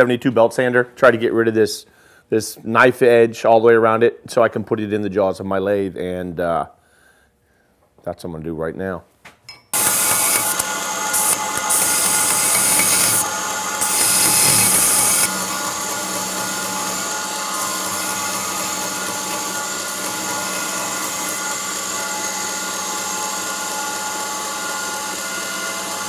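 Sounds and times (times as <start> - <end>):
belt sander humming: 9.8 - 26.0.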